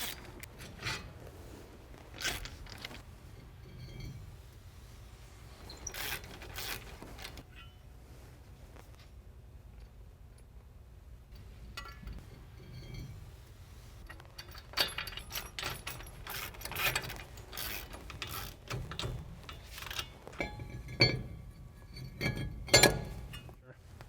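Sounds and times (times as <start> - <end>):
metal tools clicking and clinking: 11.3 - 13.2, 14.0 - 23.6.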